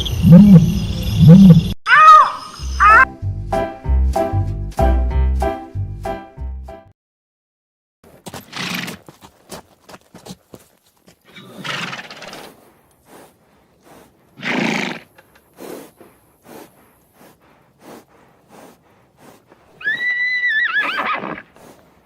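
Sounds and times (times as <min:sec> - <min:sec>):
horse whinny: 0:11.3 - 0:12.4, 0:14.4 - 0:15.1, 0:19.8 - 0:21.6
horse blowing breath: 0:11.3 - 0:22.0.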